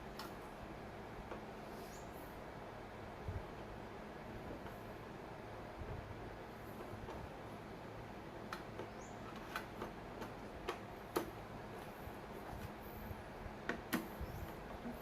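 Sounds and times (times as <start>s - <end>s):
light clicks and taps of parts: 8.4s - 12.8s.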